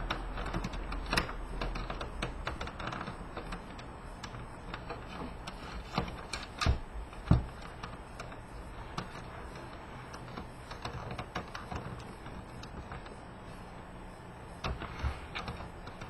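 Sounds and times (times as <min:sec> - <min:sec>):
plastic and metal parts clicking: 0:14.6 - 0:16.0.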